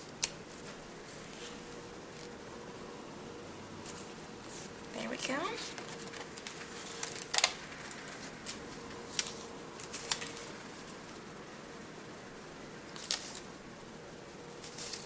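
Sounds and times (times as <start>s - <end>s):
paper clicks and crackles: 3.8s - 11.2s, 12.9s - 13.6s, 14.5s - 15.0s.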